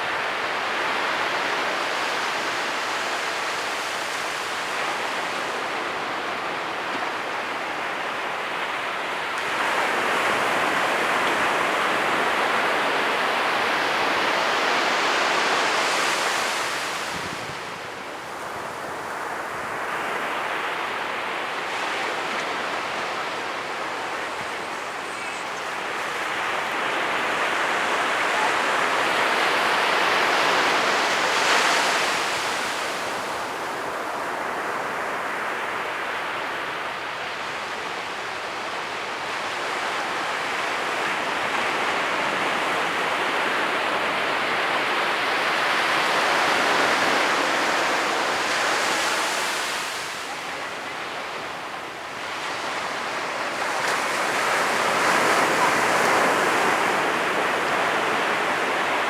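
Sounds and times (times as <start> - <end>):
ocean surf breaking: 9.4 - 36.1, 41.4 - 59.0.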